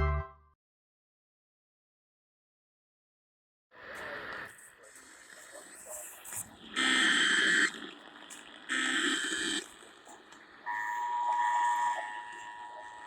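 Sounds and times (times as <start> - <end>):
screechy digital data bursts: 4.5 - 13.0
two-tone attention signal: 10.7 - 13.0.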